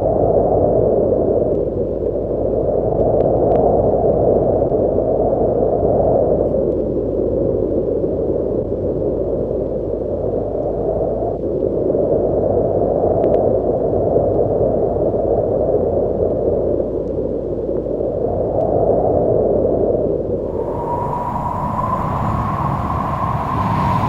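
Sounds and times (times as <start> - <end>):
wind blowing in gusts: 20.4 - 24.0.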